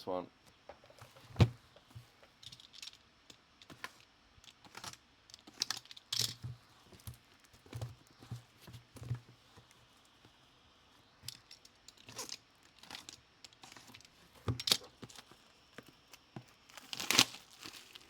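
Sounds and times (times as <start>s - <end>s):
hands handling packaging: 11.2s - 18.0s.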